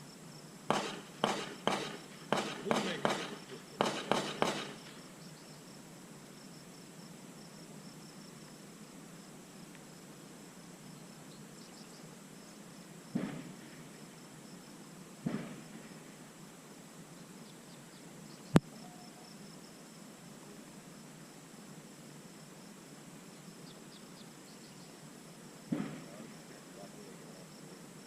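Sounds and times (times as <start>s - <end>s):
insects chirring: 0.0s - 28.0s
gunshots: 0.7s - 5.0s, 13.2s - 13.6s, 15.2s - 15.8s, 25.7s - 26.2s.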